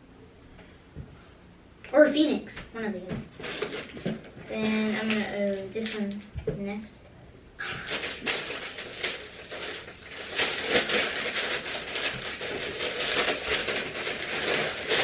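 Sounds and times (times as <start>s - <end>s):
packaging crinkling: 3.4s - 6.2s, 7.8s - 15.0s.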